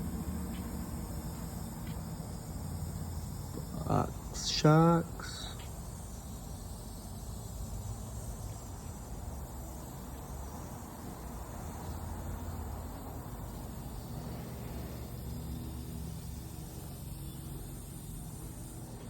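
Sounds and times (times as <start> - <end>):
crickets chirping: 0.0 - 19.0.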